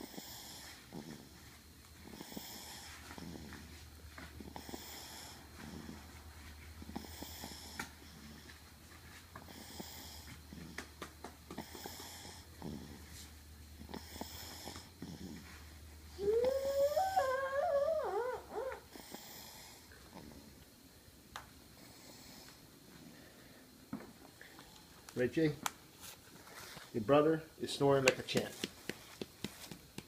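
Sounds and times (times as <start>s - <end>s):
wheezy rhythmic snoring: 0.0s - 8.6s, 9.3s - 10.9s, 11.5s - 20.6s
high wavering whine: 16.0s - 18.9s.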